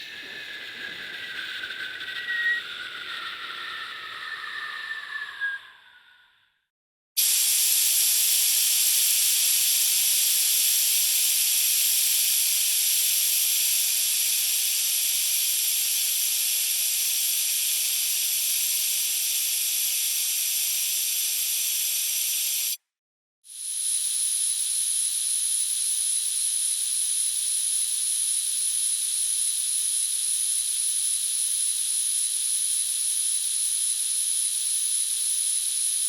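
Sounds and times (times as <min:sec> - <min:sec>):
high hiss of escaping gas: 0:07.2 - 0:09.6.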